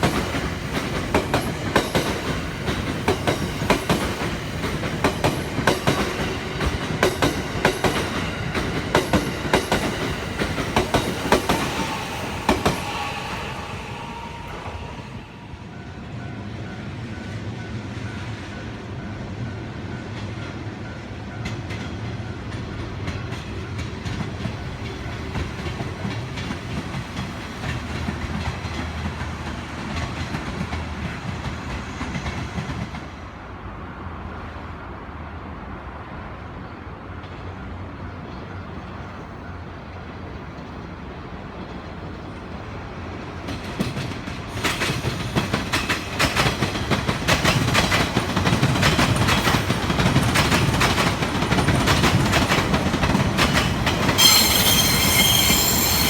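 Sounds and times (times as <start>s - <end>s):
train rumble with rail clatter: 0.0s - 56.0s
hiss: 11.0s - 15.5s.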